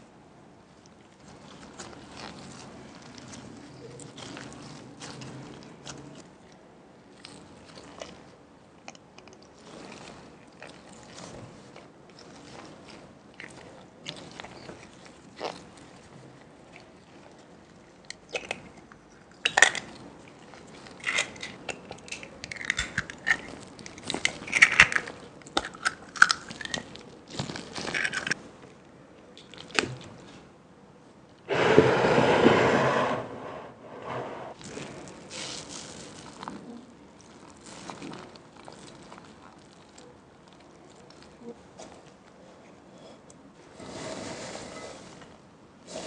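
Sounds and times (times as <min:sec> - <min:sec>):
crinkles taps and clatters: 0:18.1 - 0:28.7.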